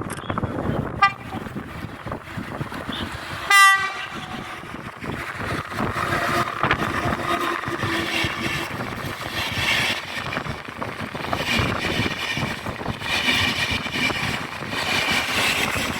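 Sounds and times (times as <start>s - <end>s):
train running rumble: 0.0s - 15.9s
train horn: 1.0s - 1.5s, 2.9s - 4.7s.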